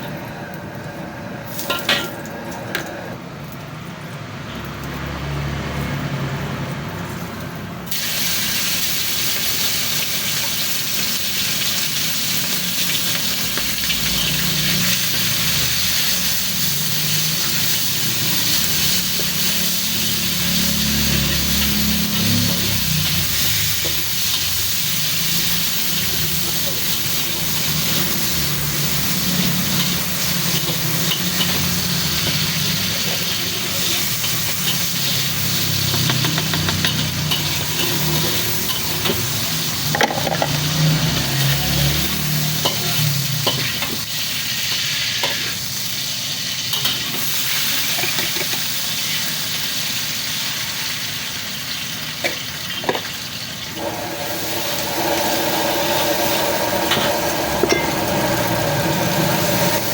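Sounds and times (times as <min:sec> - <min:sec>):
food sizzling in a wok: 0:01.4 - 0:02.2, 0:04.4 - 0:59.9
spatula clanking against pan: 0:35.8 - 0:39.3, 0:56.9 - 0:58.0.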